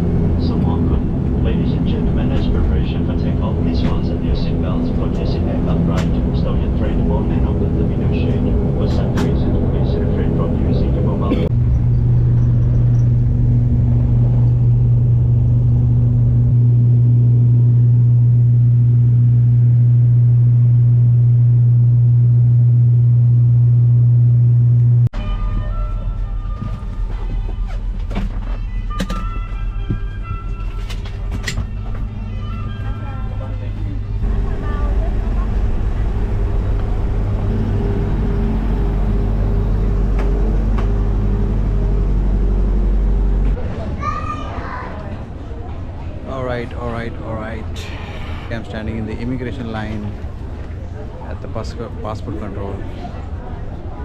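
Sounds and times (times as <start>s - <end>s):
propeller plane engine drone: 0.0s - 25.1s, 30.3s - 43.8s.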